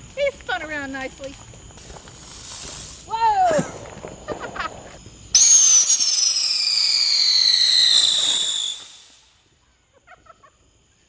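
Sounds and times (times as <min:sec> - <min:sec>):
whistling firework shrieking: 0:04.2 - 0:09.4.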